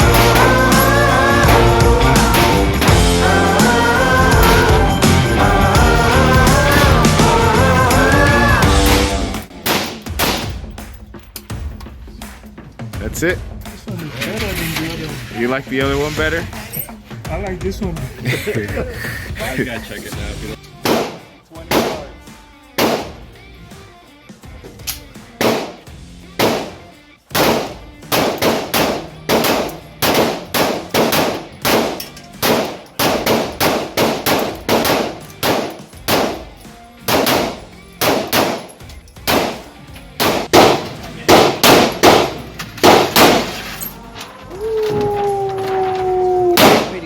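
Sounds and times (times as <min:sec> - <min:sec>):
gunshot echo: 0:09.5 - 0:10.8, 0:20.8 - 0:22.2, 0:22.8 - 0:23.2, 0:25.4 - 0:36.5, 0:37.1 - 0:43.6, 0:46.6 - 0:47.0
semi-automatic gunshots: 0:20.8 - 0:22.2, 0:22.8 - 0:23.2, 0:25.4 - 0:43.6, 0:46.6 - 0:47.0.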